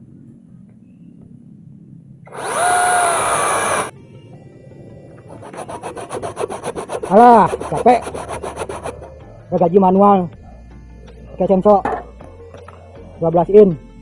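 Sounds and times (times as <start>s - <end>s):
chain rasping through wood: 2.3s - 3.9s, 5.3s - 9.2s
chainsaw motor whine: 2.3s - 3.9s, 5.2s - 9.2s.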